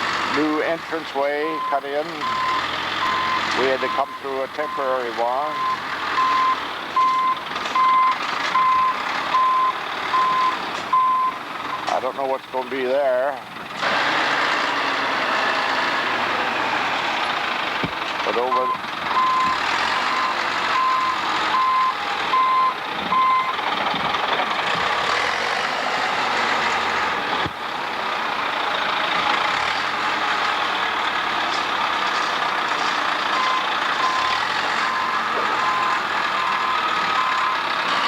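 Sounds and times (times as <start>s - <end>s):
engine running: 0.0s - 38.0s
backup alarm beeping: 1.5s - 11.8s, 18.5s - 23.6s, 33.4s - 37.6s.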